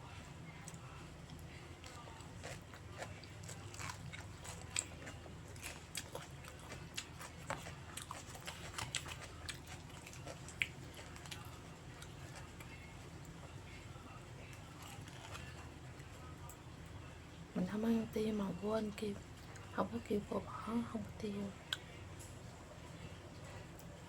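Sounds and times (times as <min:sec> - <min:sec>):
chewing noodles: 0:00.0 - 0:17.0
steady low hum: 0:00.0 - 0:24.0.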